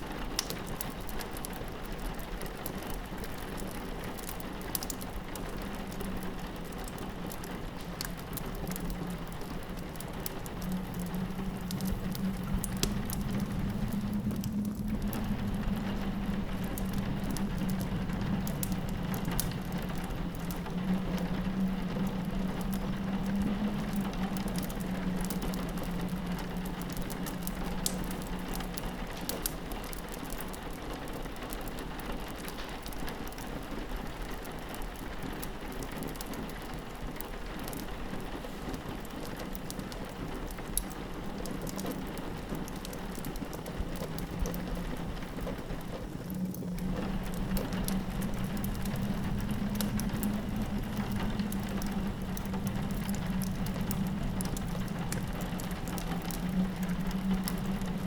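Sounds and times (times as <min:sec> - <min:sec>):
rain on a window: 0:00.0 - 0:58.0
wood fire crackling: 0:00.0 - 0:58.0
wind drone: 0:44.2 - 0:58.0.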